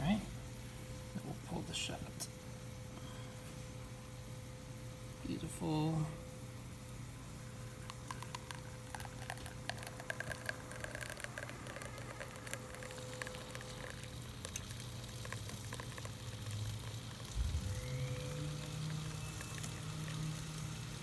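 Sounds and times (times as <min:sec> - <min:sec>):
espresso machine low hum: 0:00.0 - 0:21.0
espresso spluttering drips and pops: 0:07.4 - 0:21.0.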